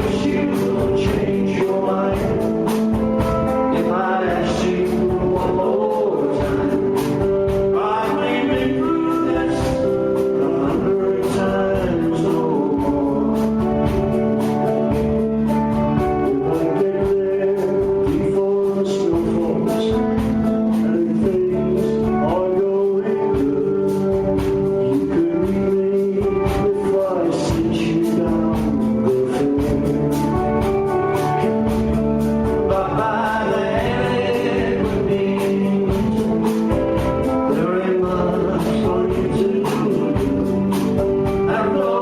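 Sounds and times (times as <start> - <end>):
drum beat: 0.0 - 18.5, 27.5 - 42.0
electric guitars: 0.0 - 42.0
lead and harmony vocals: 0.0 - 42.0.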